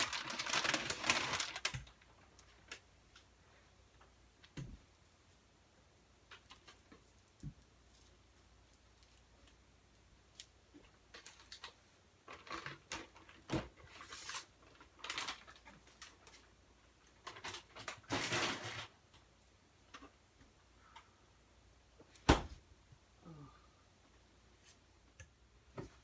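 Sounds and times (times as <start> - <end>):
plastic bag rustling: 0.0 - 2.8, 11.1 - 16.4, 17.2 - 19.0.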